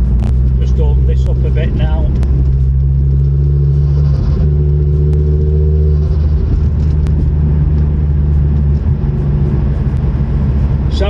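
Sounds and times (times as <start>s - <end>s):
car engine revving through exhaust: 0.0s - 11.0s.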